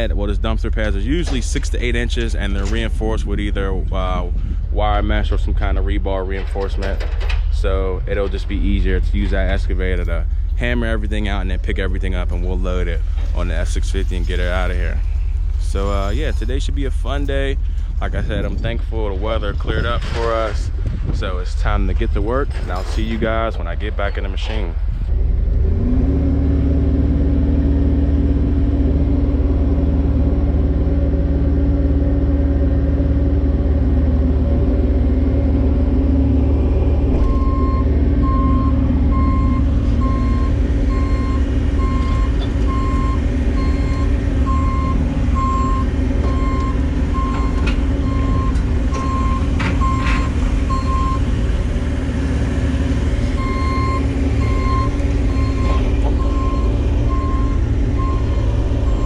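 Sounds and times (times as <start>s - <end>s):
excavator diesel engine running: 0.0s - 59.0s
warning alarm beeping: 37.2s - 51.3s, 53.4s - 59.0s.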